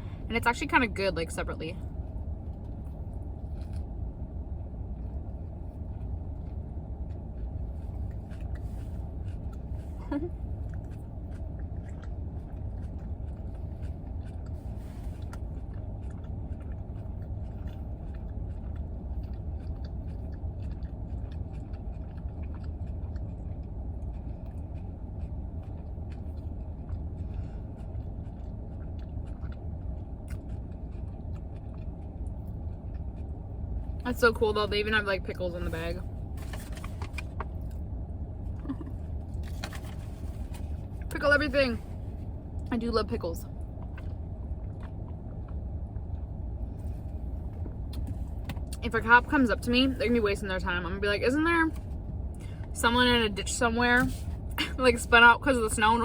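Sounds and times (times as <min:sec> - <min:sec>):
heater fan hum: 0:00.0 - 0:56.0
chewing: 0:02.0 - 0:04.2, 0:04.8 - 0:34.0, 0:43.4 - 0:48.8
sandwich wrapper rustling: 0:36.4 - 0:37.5.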